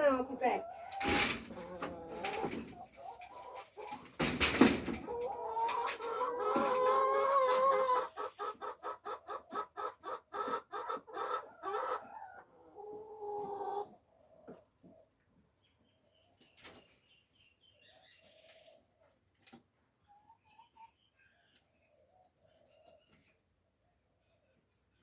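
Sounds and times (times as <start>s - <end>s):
hen calling and clucking: 0.0s - 15.1s.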